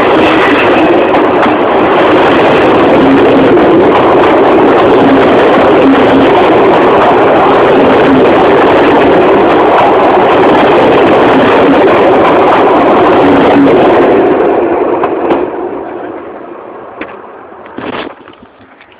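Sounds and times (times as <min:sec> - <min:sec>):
train passing: 0:00.0 - 0:18.9.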